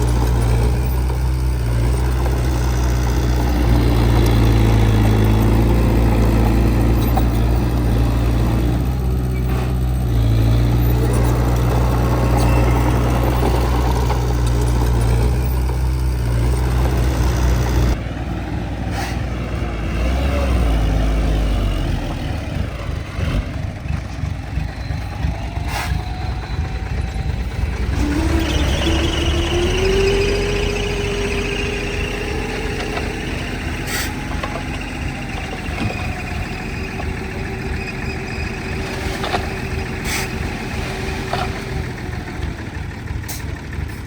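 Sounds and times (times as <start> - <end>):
rising squeal: 0.0 - 18.0, 24.5 - 41.6
heavy diesel engine running: 0.0 - 44.0.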